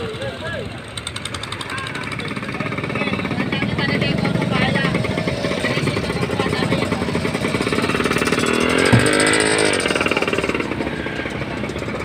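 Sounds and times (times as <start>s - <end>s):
engine running pulsing: 2.5s - 12.0s.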